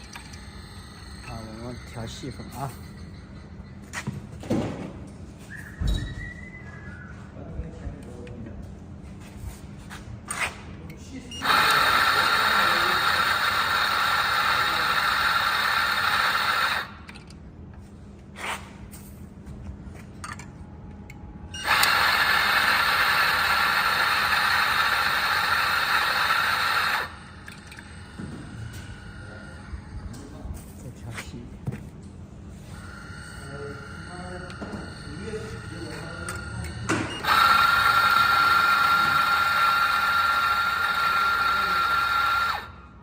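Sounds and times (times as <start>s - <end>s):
electric coffee grinder running: 11.4s - 17.0s, 21.6s - 27.2s, 37.2s - 42.8s.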